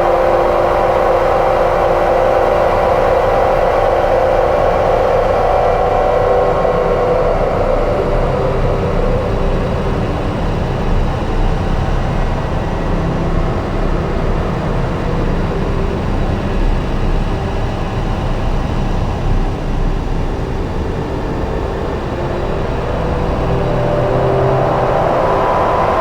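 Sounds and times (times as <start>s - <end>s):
bright synth tone: 0.0s - 10.6s, 21.4s - 26.0s
electronic noise drone: 0.0s - 26.0s.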